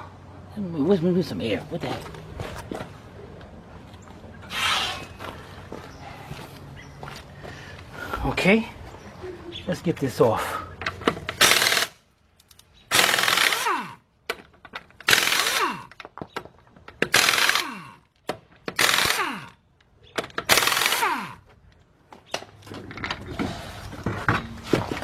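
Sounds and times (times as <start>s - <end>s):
pneumatic impact wrench bursts: 11.3s - 12.0s, 12.9s - 14.0s, 15.0s - 16.0s, 17.0s - 18.0s, 18.7s - 19.6s, 20.4s - 21.4s.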